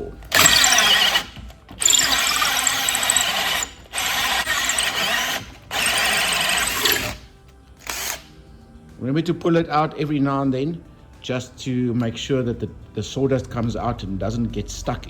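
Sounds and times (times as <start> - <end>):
power drill cutting wood: 0.0 - 8.3.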